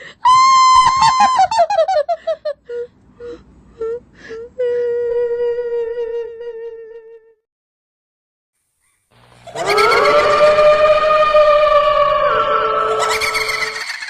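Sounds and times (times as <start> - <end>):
cackling laugh: 0.6 - 2.6, 9.4 - 10.5, 12.9 - 14.0
ghostly wailing voice: 9.5 - 13.8.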